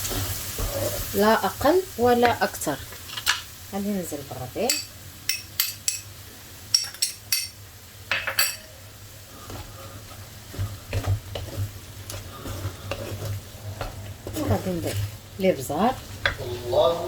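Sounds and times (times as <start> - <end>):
light sizzle: 0.0 - 17.0
spoon clinking against pot: 4.7 - 6.1, 6.7 - 8.7
spoon stirring sauce: 9.3 - 15.2, 15.9 - 16.7.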